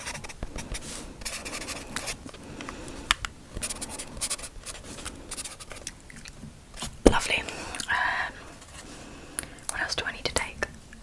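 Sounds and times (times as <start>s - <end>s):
pen writing on paper: 0.0s - 2.2s, 3.6s - 5.8s.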